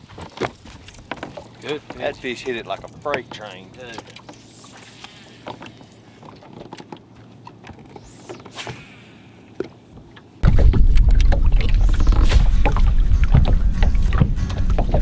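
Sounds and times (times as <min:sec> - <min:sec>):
boat engine rumbling: 0:09.3 - 0:15.0.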